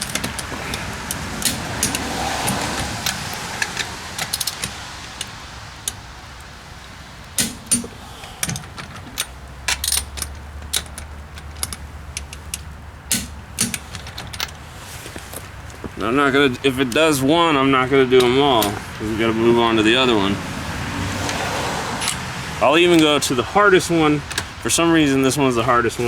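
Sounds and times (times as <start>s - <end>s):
metallic clicks of hand tools: 7.4s - 14.6s.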